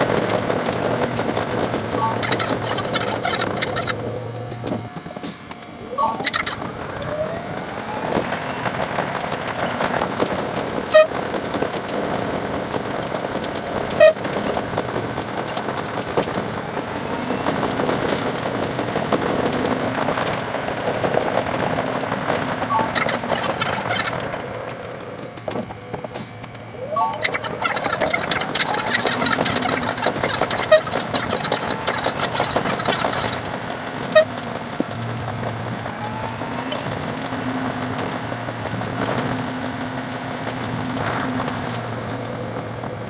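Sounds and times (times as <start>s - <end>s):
sped-up train rushing rumble: 0.0s - 43.0s
short sharp blips: 26.8s - 33.4s.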